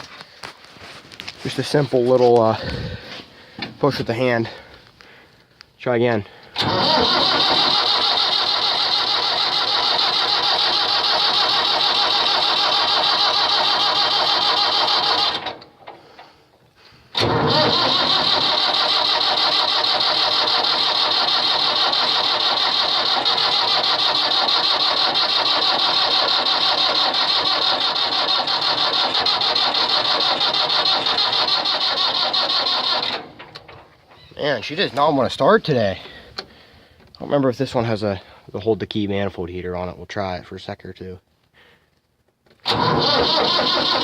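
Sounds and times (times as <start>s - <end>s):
starter cranking diesel engine: 6.6s - 15.8s, 17.1s - 33.7s, 42.6s - 44.0s.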